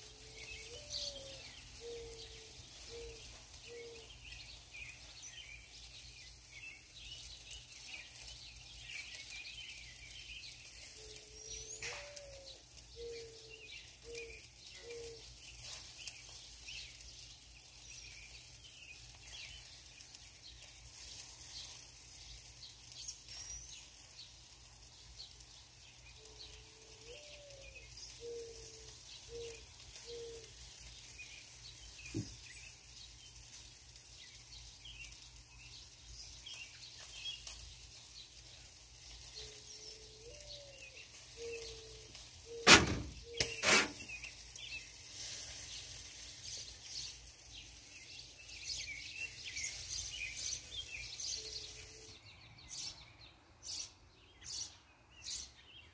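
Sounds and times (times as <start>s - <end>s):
birds chirping: 0.0s - 55.9s
bird cooing: 0.1s - 4.2s, 11.0s - 15.2s, 26.2s - 30.5s, 39.4s - 44.0s
sharp knocks: 42.6s - 43.9s.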